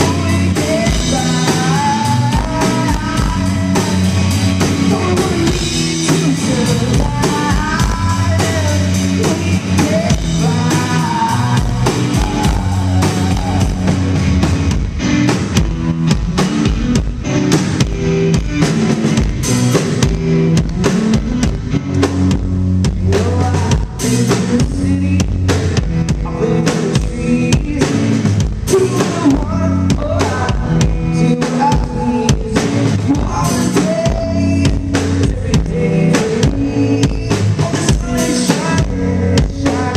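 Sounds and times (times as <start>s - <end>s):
person singing: 0.0s - 14.2s, 23.0s - 39.9s
driving drum kit: 0.0s - 39.9s
electric guitar: 0.0s - 39.9s.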